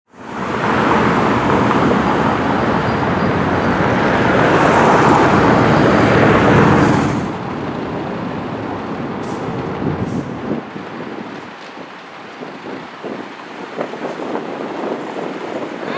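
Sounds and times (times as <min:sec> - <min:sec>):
heavy vehicle driving past: 0:00.3 - 0:10.7.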